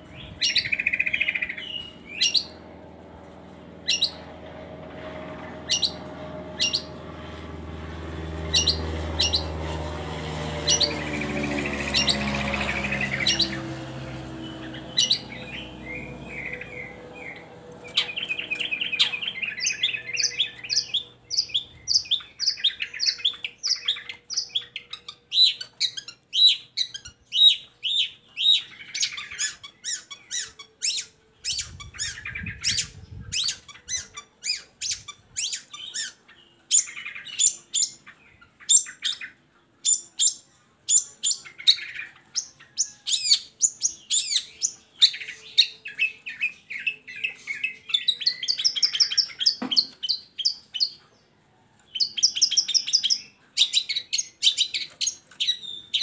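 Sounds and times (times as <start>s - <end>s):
bird singing sharp chirps: 10.5s - 42.5s.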